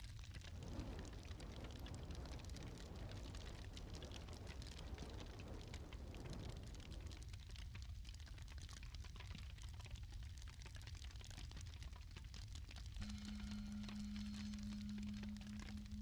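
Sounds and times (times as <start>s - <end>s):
wood fire crackling: 0.0s - 16.0s
rushing hiss of flame: 0.3s - 7.4s.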